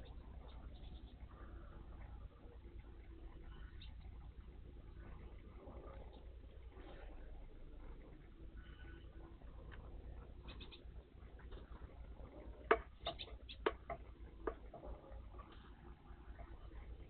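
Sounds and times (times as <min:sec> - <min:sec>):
faint high bird chirps: 0:00.0 - 0:01.9, 0:03.3 - 0:04.3, 0:10.4 - 0:11.0, 0:13.0 - 0:13.8
sharp bird clicks and ticks: 0:09.7 - 0:11.6, 0:12.6 - 0:15.7.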